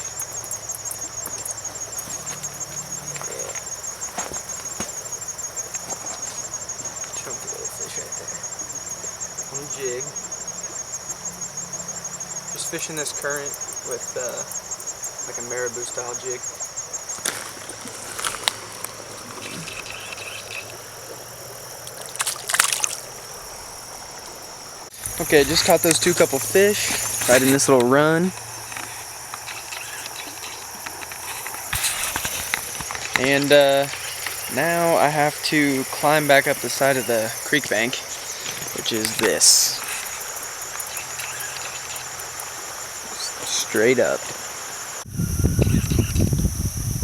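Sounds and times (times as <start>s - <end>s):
insects trilling: 0.0s - 47.0s
crackling clicks: 12.6s - 20.9s, 21.8s - 23.4s, 24.2s - 42.5s.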